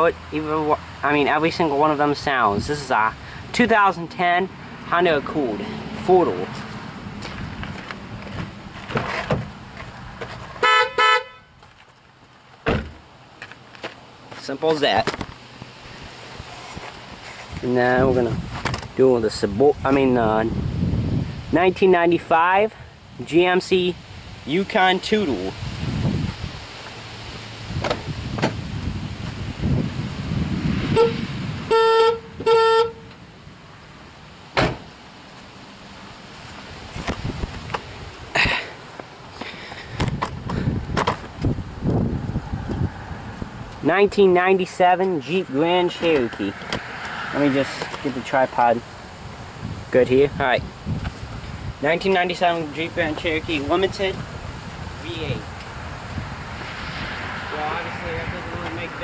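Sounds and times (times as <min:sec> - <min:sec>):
car horn beeps: 0:10.6 - 0:11.6, 0:30.9 - 0:33.1
thump: 0:12.6 - 0:13.0, 0:27.8 - 0:28.6, 0:34.6 - 0:34.9, 0:41.0 - 0:41.3.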